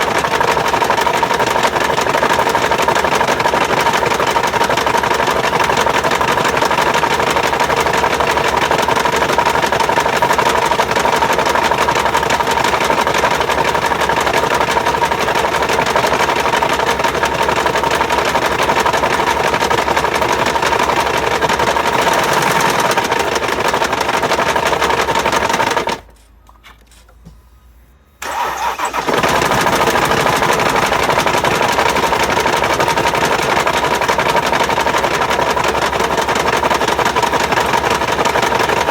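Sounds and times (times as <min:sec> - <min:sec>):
diesel engine running: 0:00.0 - 0:26.3, 0:28.2 - 0:38.9
engine starting: 0:28.2 - 0:32.2.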